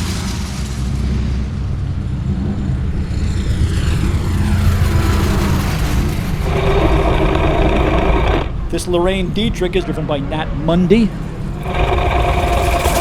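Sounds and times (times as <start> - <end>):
falling tone sweeping down: 0.0 - 9.6
deep car engine running: 1.5 - 9.9, 11.2 - 13.0
higher engine note: 1.9 - 10.0, 11.2 - 13.0.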